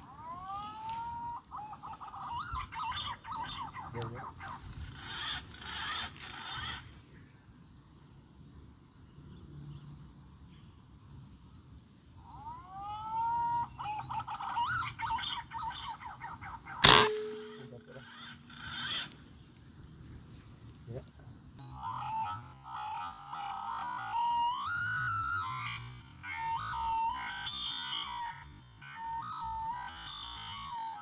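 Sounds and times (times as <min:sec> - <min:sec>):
bird calling and chirping: 0:00.0 - 0:06.9, 0:12.2 - 0:19.5.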